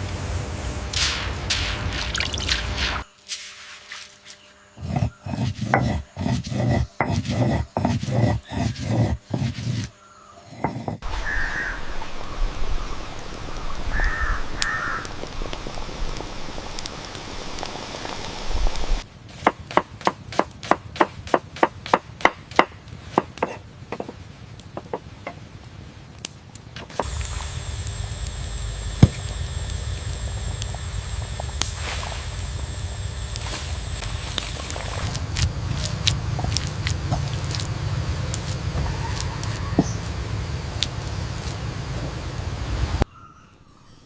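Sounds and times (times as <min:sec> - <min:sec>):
steady rushing noise: 0:00.0 - 0:03.1, 0:26.8 - 0:38.9, 0:39.5 - 0:43.0.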